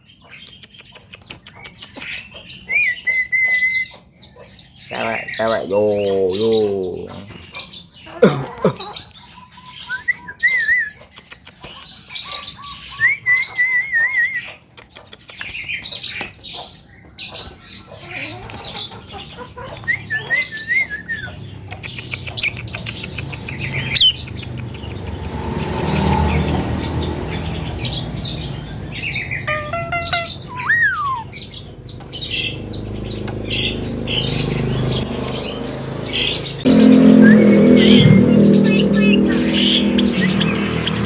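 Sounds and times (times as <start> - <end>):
bird clicking chatter: 0.3 - 2.3, 11.1 - 11.9, 21.5 - 26.8
bird trilled whistles: 29.5 - 31.4.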